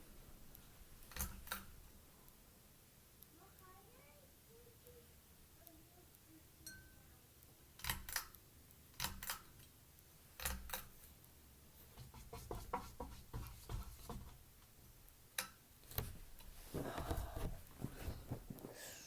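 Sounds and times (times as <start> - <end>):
sharp clicks: 7.8 - 11.4.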